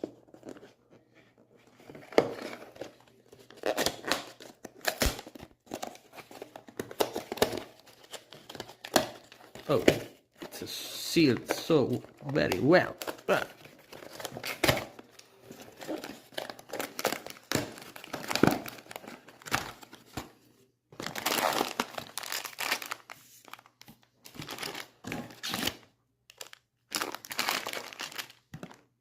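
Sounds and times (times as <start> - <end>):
packaging torn and crinkled: 21.0 - 23.7, 24.4 - 28.5.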